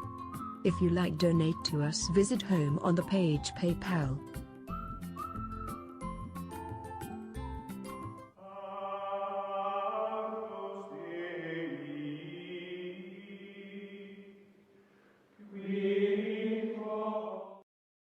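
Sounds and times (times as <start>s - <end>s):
choir-like held chords: 8.4s - 14.5s, 15.4s - 17.6s.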